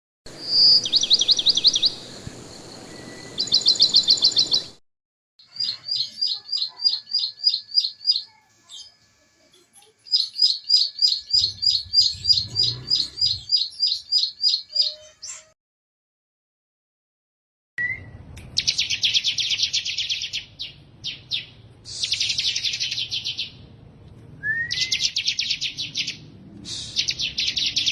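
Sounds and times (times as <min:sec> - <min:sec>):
songbird chirping: 0:00.3 - 0:04.8, 0:05.4 - 0:09.0, 0:09.8 - 0:15.6.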